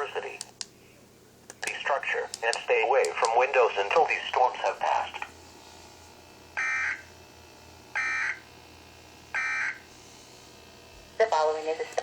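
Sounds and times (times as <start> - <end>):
buzzy two-tone digital bursts: 6.6 - 7.1, 7.9 - 8.5, 9.3 - 10.5.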